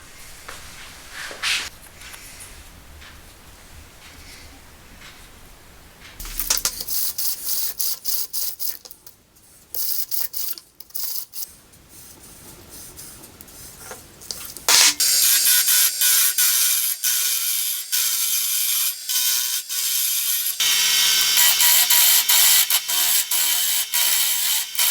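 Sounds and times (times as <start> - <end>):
lathe motor hum: 19.5 - 24.9.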